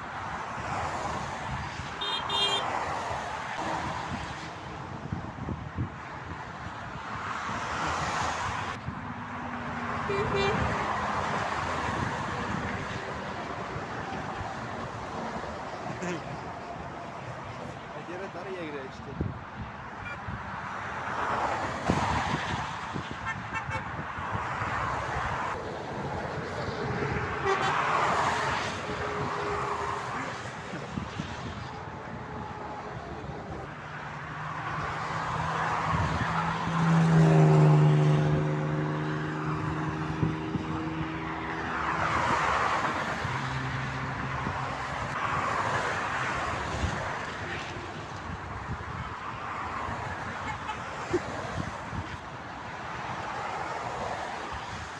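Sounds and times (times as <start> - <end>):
traffic passing: 0.0 - 54.9
low vehicle horn: 2.0 - 2.8, 10.0 - 10.9, 20.0 - 20.3, 23.2 - 24.0, 27.3 - 28.1, 50.4 - 50.9.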